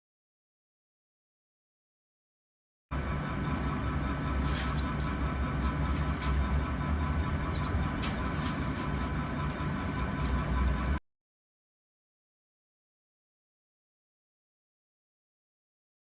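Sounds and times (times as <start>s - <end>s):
faint hum: 2.9s - 11.0s
steady low rumble: 2.9s - 11.0s
small bird chirping: 4.0s - 5.2s, 7.5s - 8.7s.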